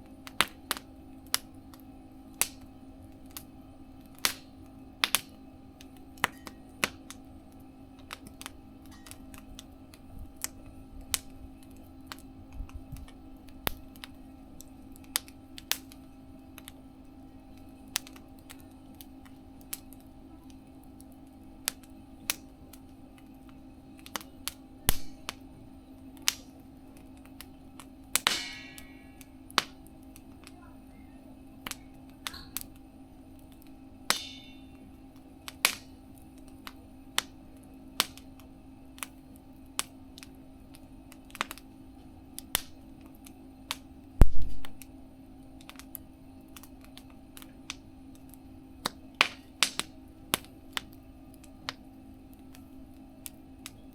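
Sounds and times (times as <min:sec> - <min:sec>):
low hum: 0:00.0 - 0:37.8
wood fire crackling: 0:00.0 - 0:53.9.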